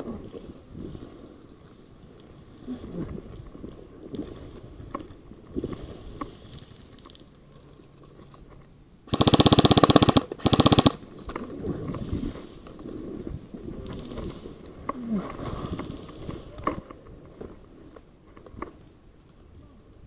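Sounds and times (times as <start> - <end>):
airsoft rifle bursts: 9.1 - 11.0.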